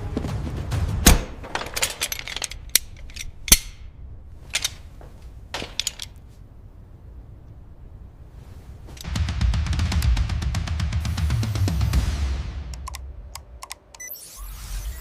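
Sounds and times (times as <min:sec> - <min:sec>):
mechanical clicks and clanks: 0:01.1 - 0:03.9, 0:12.8 - 0:14.1.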